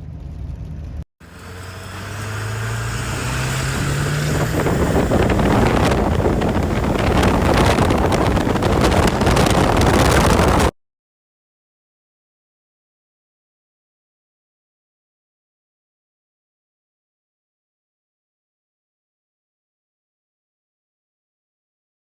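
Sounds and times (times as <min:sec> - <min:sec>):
diesel truck engine accelerating: 0:00.0 - 0:10.7.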